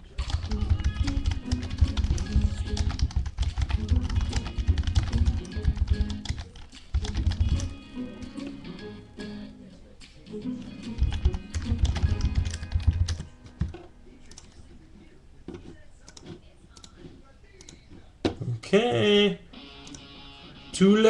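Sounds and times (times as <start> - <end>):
rapid keyboard typing: 0.0 - 7.8, 10.9 - 14.6
background music: 0.0 - 14.6, 18.8 - 21.0.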